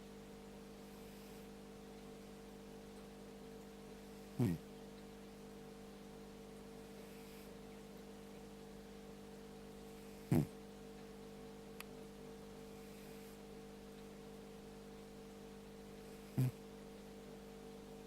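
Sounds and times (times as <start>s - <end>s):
steady electrical hum: 0.0s - 18.0s
cat snoring: 4.1s - 4.6s, 7.0s - 7.5s, 9.9s - 10.6s, 12.7s - 13.4s, 16.0s - 16.6s.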